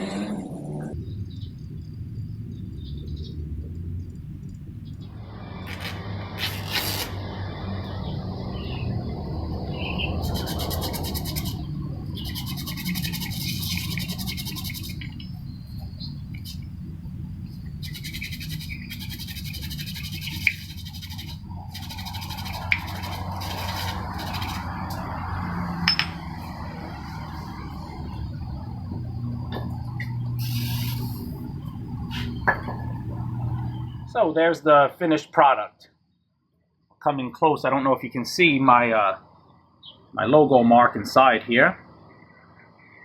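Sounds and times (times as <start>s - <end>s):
steady low hum: 0.0s - 34.4s
rapid scraping on metal: 10.2s - 15.2s, 17.7s - 24.8s.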